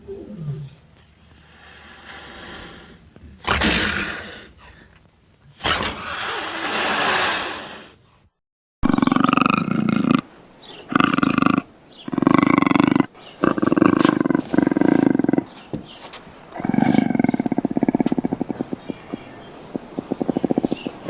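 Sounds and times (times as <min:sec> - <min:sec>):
big cat roaring and snarling: 0:01.7 - 0:04.6, 0:05.6 - 0:08.0, 0:10.9 - 0:15.6, 0:16.6 - 0:19.1.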